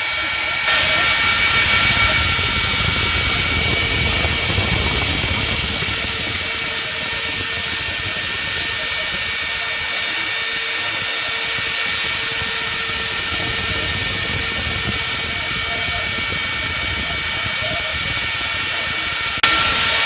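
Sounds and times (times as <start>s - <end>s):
router spindle whining: 0.0s - 20.0s
low rumble: 0.7s - 9.3s.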